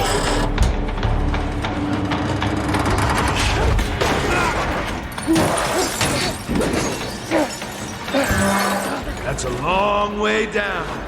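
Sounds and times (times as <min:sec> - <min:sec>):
mechanical clanking and whirring: 0:02.1 - 0:09.8.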